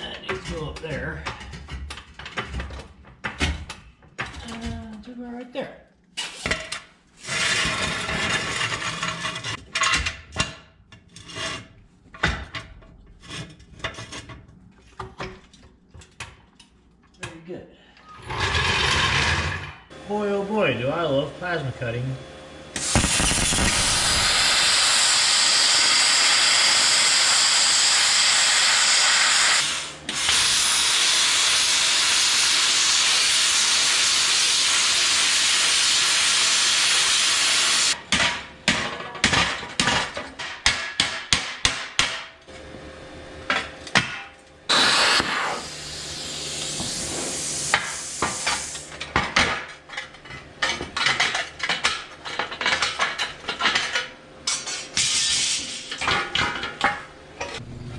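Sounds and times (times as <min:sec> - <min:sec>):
plasma cutter hissing: 0:22.8 - 0:38.0, 0:44.7 - 0:48.9.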